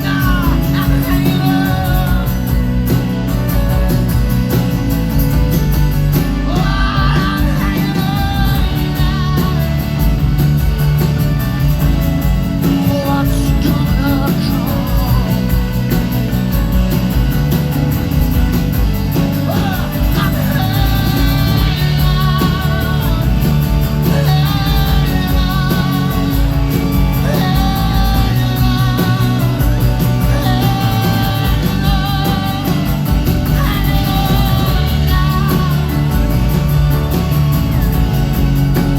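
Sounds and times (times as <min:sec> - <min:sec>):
wordless singing: 0:00.0 - 0:04.8, 0:05.9 - 0:11.7, 0:12.5 - 0:16.5, 0:18.9 - 0:38.9
electric guitar: 0:00.0 - 0:38.9
heavy bass: 0:00.0 - 0:38.9
live rock band playing: 0:00.0 - 0:38.9.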